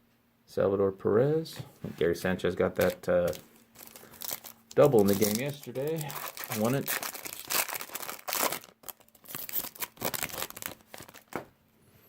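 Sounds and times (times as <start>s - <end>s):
foil wrapper crinkling and tearing: 2.8s - 11.5s.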